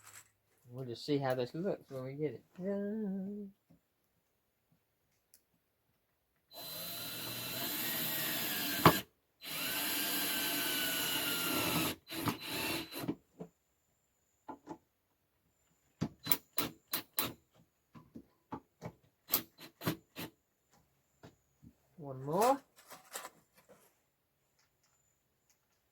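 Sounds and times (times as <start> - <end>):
power drill driving screws into wood: 6.5 - 13.2, 16.2 - 17.4, 19.3 - 20.3.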